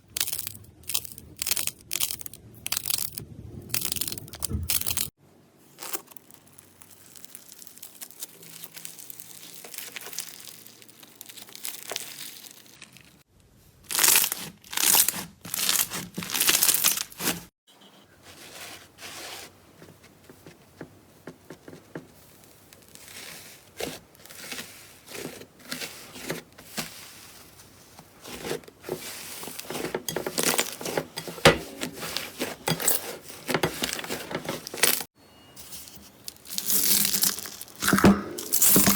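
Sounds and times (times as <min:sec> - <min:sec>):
slime crackling and popping: 0:00.1 - 0:05.1, 0:05.8 - 0:13.2, 0:36.4 - 0:38.9.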